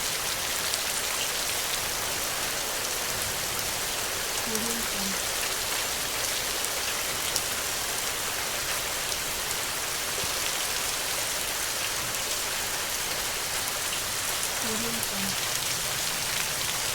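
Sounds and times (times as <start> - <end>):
steady rain hiss: 0.0 - 16.9
raindrops ticking: 4.3 - 8.1, 11.8 - 16.9.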